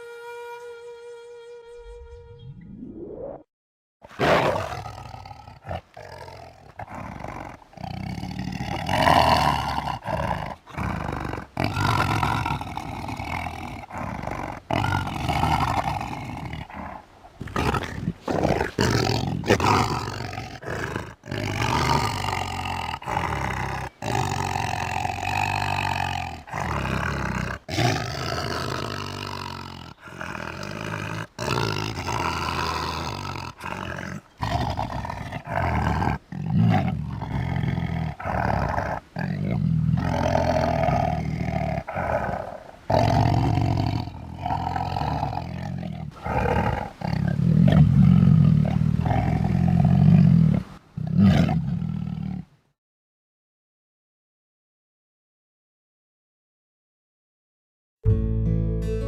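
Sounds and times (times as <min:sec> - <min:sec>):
tiger growling and snarling: 0:04.0 - 0:52.5.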